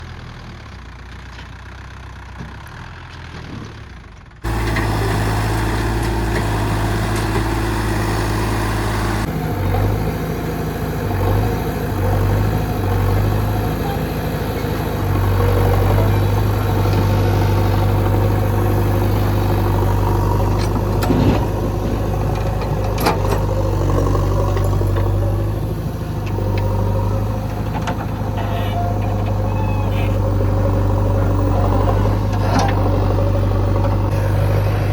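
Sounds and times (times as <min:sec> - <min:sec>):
diesel engines running: 0:00.0 - 0:34.9.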